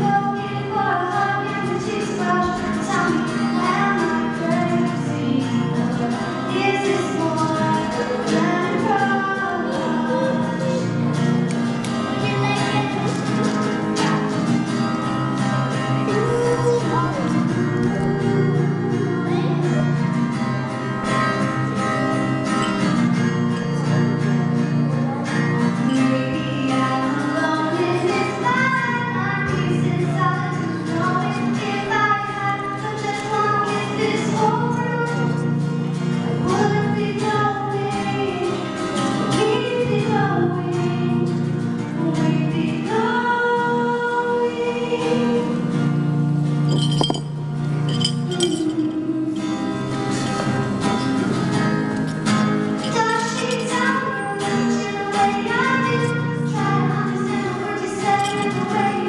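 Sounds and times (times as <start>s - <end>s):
women singing pop song: 0.0s - 10.9s, 36.3s - 45.6s, 52.8s - 59.0s.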